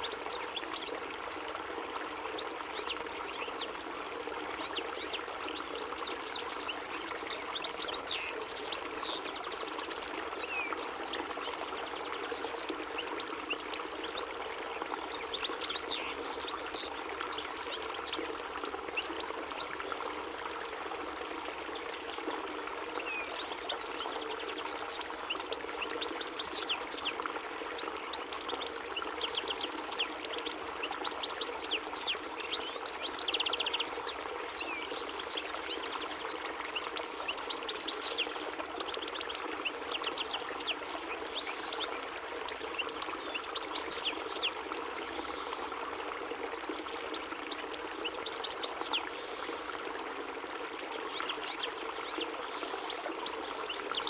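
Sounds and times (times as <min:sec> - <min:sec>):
goldfinch twittering song: 0:05.8 - 0:19.5, 0:22.7 - 0:44.6, 0:47.5 - 0:49.6, 0:51.1 - 0:54.0.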